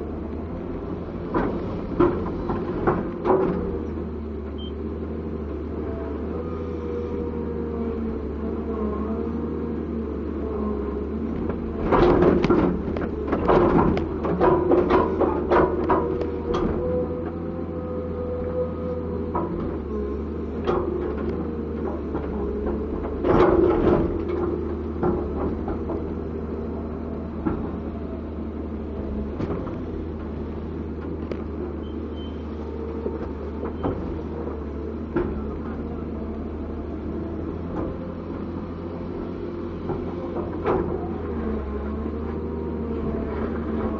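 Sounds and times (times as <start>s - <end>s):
excavator diesel engine running: 0.0s - 43.9s
loud metallic clanks and knocks: 11.8s - 16.9s.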